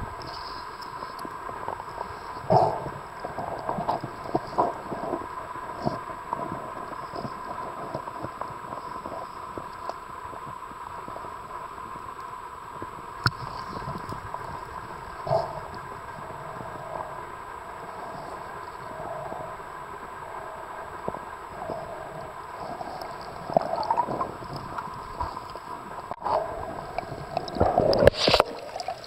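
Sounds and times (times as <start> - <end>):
underwater crackling clicks: 0.1 - 10.6, 12.1 - 15.8, 22.6 - 29.0.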